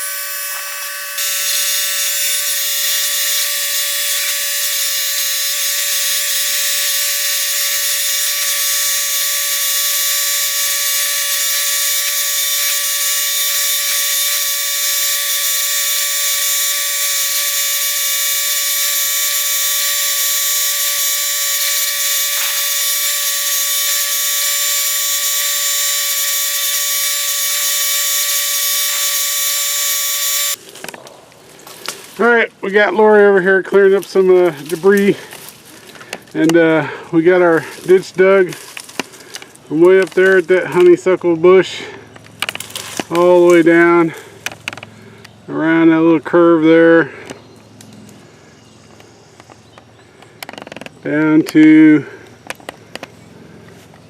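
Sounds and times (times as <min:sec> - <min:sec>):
high-pitched mechanical whine: 0:00.0 - 0:31.0.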